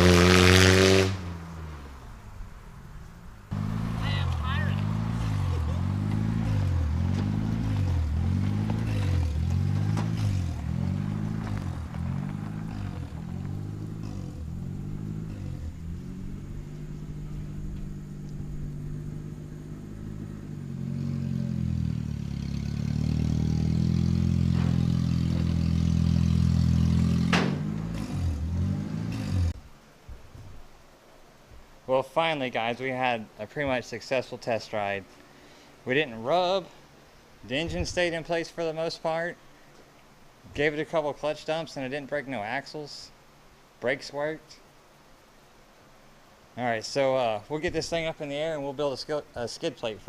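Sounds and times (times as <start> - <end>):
car engine revving: 0.0 - 29.6.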